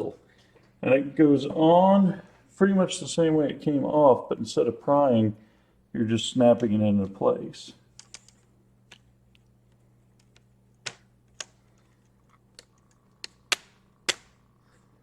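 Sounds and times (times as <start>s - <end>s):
plastic clips snapping: 10.2s - 14.4s.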